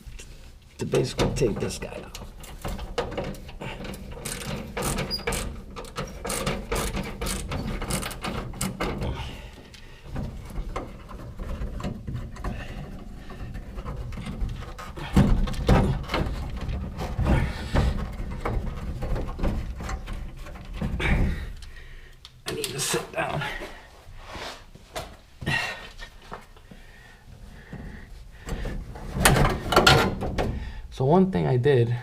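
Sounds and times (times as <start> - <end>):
knocks and thumps of parts: 0.9 - 23.7, 26.6 - 30.9
hand ratchet clicking rapidly: 3.8 - 8.9.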